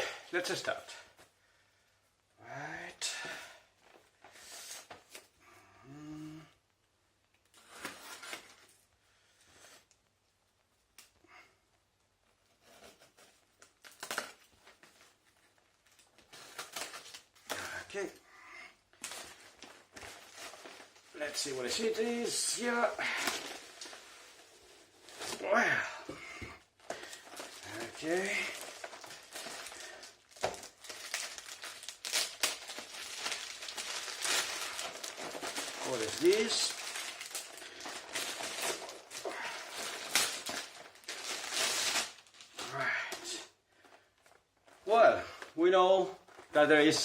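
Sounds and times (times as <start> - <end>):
packing material crinkling: 19.0 - 25.9, 26.8 - 43.3
cardboard box rustling and tearing: 27.2 - 42.2.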